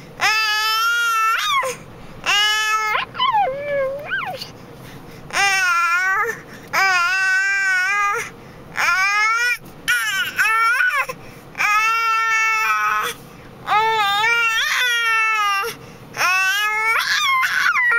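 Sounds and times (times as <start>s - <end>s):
baby crying: 8.8s - 17.9s.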